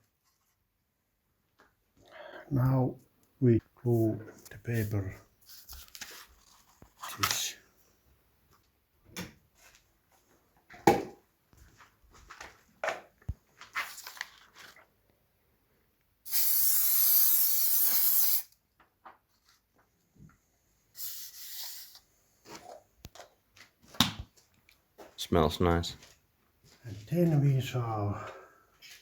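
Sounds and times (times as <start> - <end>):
aerosol spray hissing: 16.3 - 18.5, 21.0 - 22.0.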